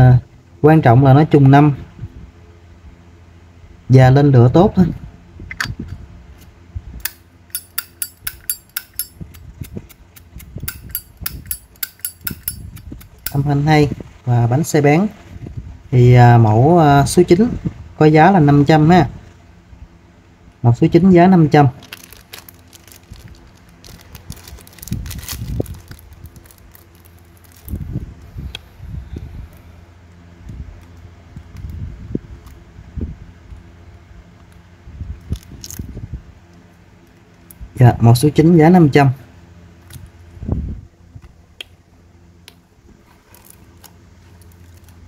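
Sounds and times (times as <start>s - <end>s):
lighter metal clicks: 7.0s - 13.5s.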